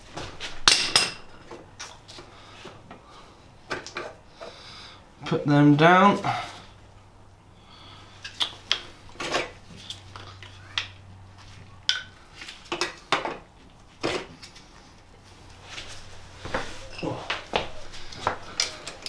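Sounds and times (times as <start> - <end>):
metal bike parts clinking: 0.6 - 1.4.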